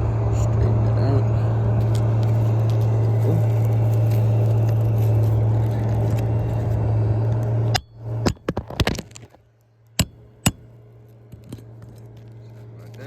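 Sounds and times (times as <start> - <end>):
low mechanical hum: 0.0 - 13.0
hammer striking roofing nail: 10.0 - 10.7.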